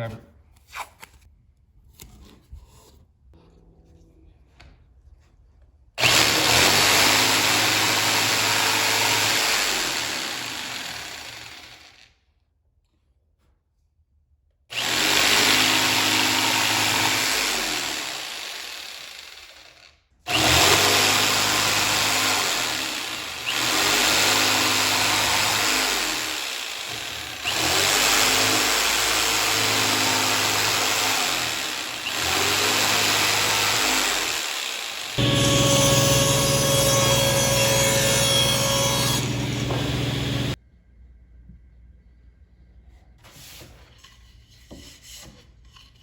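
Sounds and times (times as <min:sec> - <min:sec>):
jigsaw cutting plywood: 0:06.0 - 0:12.1, 0:14.7 - 0:40.6.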